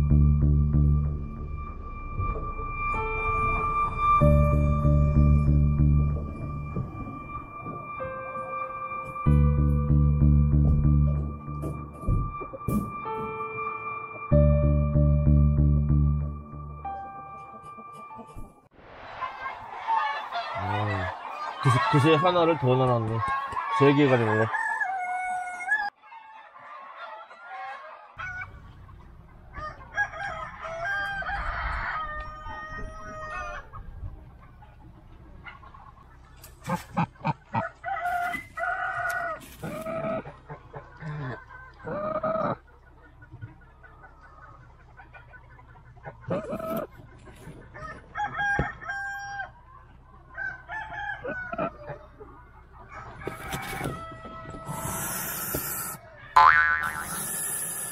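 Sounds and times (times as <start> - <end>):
chickens clucking: 4.2 - 14.4, 16.8 - 57.9
rooster crowing: 23.3 - 28.6, 29.5 - 33.7, 37.5 - 39.4, 47.8 - 49.6, 50.3 - 52.0, 52.9 - 56.0.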